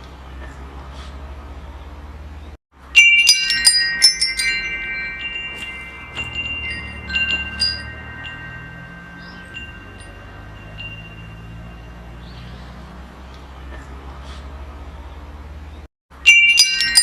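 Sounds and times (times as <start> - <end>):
metal wind chimes jangling: 2.8 - 12.6, 16.2 - 17.0.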